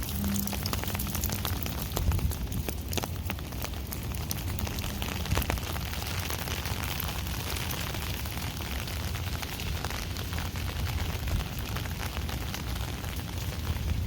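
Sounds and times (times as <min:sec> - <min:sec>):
deep rumble: 0:00.0 - 0:07.1
rain hiss: 0:00.0 - 0:14.0
raindrops ticking: 0:00.0 - 0:14.0.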